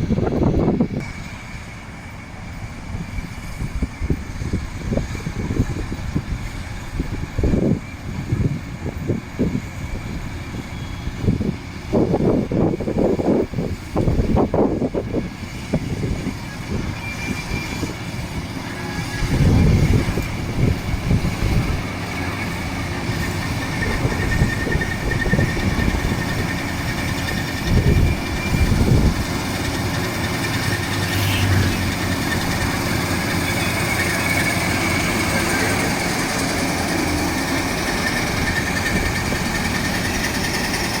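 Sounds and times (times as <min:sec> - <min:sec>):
combine harvester running: 0:00.0 - 0:41.0
thin high whine: 0:16.1 - 0:41.0.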